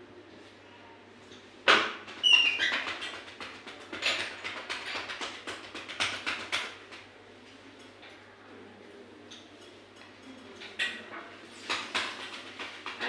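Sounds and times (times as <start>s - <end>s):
cupped hands slapping a chest: 2.8s - 7.0s.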